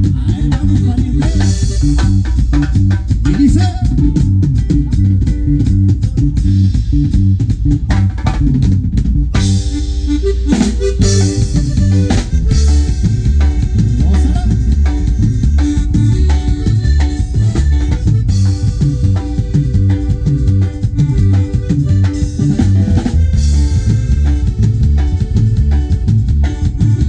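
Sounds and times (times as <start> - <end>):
bass: 0.0 - 27.0
drum kit: 0.0 - 27.0
guitar: 0.0 - 27.0.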